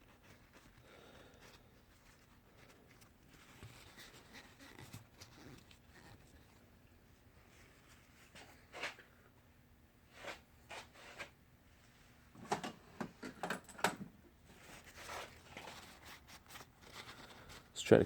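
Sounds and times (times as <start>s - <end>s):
faint scraping and rubbing: 10.1s - 12.1s, 14.5s - 17.8s.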